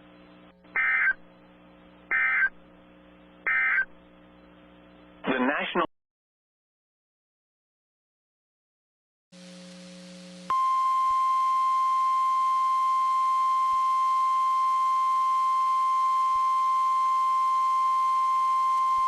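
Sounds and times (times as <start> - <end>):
long steady alarm beep: 10.5 - 19.0.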